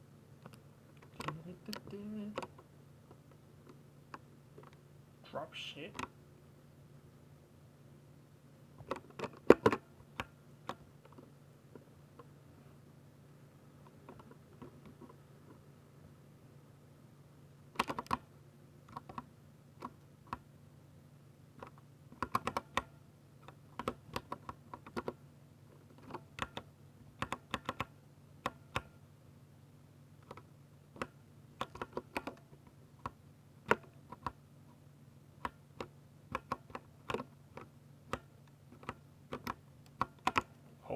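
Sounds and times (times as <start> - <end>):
mechanical keyboard keystrokes: 17.7 - 18.3, 21.6 - 25.2, 25.9 - 28.9, 30.2 - 32.4.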